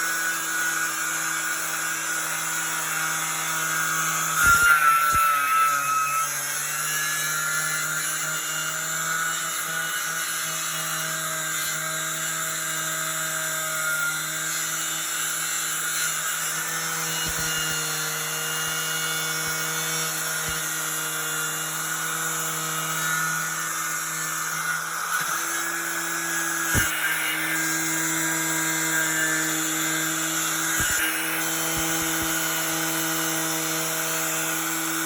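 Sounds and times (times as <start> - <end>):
angle grinder wire wheel on steel: 14.3 - 18.8, 21.6 - 35.0.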